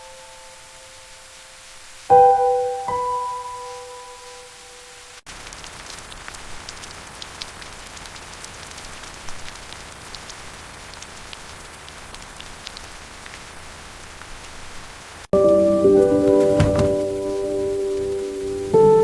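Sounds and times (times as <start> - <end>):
steady rain hiss: 0.0 - 19.0
raindrops tapping: 5.3 - 13.6, 15.4 - 19.0.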